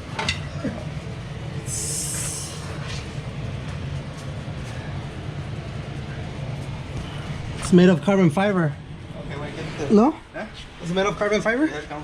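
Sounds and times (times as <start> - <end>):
short hiss: 1.7 - 3.1.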